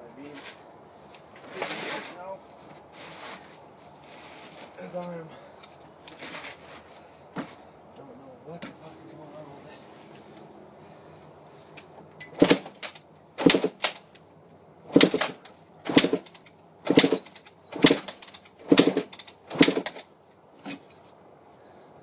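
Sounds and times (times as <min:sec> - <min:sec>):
dirt bike engine kick-started: 0:14.9 - 0:20.0.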